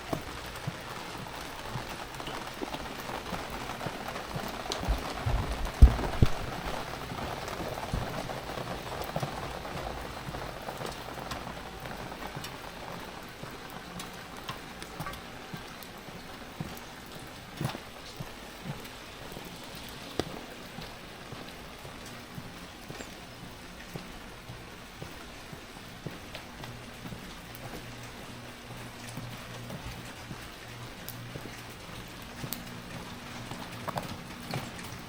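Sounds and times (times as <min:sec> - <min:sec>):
steady rain falling: 0:00.0 - 0:35.0
loud low thumps: 0:04.9 - 0:06.6.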